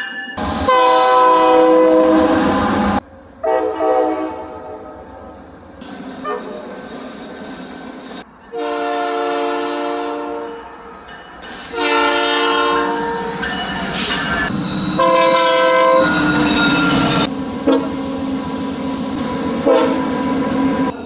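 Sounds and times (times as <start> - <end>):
passing train rumble: 0.0 - 21.0
train air horn blasts: 0.4 - 5.0, 8.5 - 10.6, 11.6 - 13.5, 15.0 - 18.0, 19.6 - 20.3.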